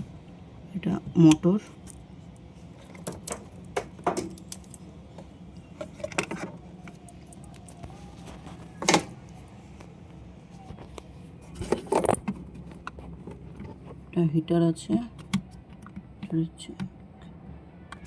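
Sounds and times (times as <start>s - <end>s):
low steady hum: 0.0s - 18.0s
plastic parts clicking and rattling: 2.8s - 9.2s.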